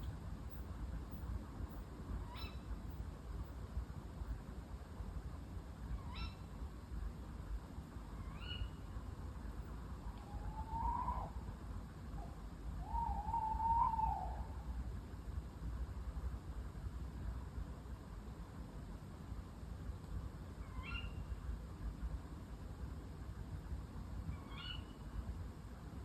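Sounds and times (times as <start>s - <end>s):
low background rumble: 0.0s - 26.0s
owl calling: 2.2s - 2.7s, 5.9s - 6.5s, 8.2s - 8.8s, 10.2s - 11.4s, 12.2s - 14.7s, 20.6s - 21.3s, 24.4s - 25.0s.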